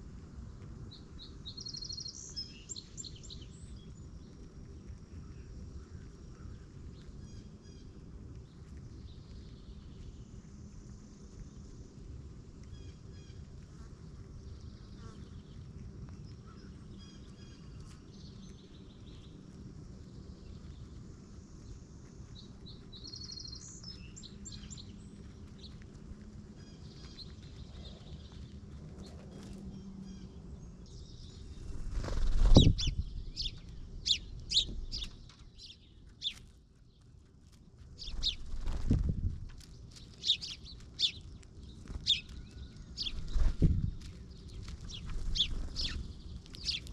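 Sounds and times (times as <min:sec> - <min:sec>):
small birds chirping: 0:00.0 - 0:46.9
steady low rumble: 0:00.0 - 0:46.9.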